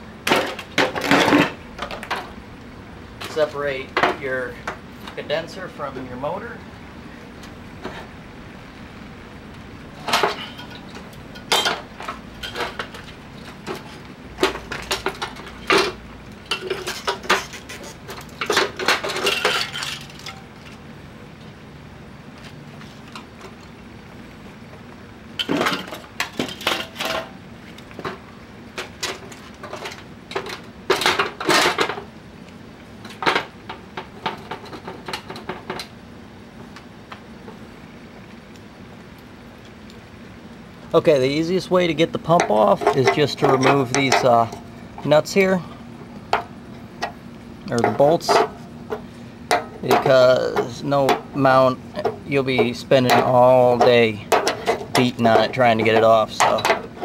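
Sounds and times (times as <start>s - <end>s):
metal tools clanking on sheet metal: 0.3s - 2.3s, 10.0s - 20.5s, 25.4s - 27.4s, 28.8s - 32.0s, 42.2s - 45.7s, 46.3s - 57.0s.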